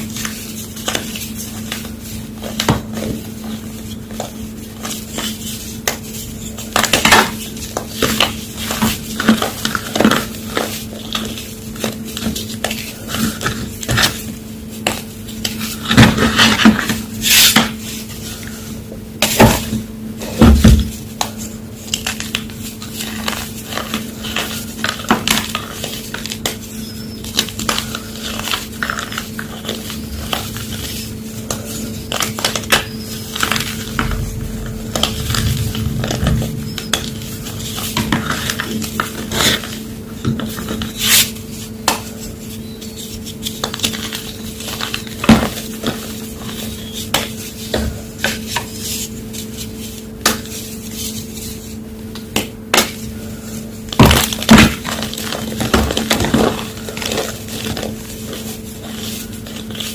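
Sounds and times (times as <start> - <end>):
low hum: 30.2 - 40.9.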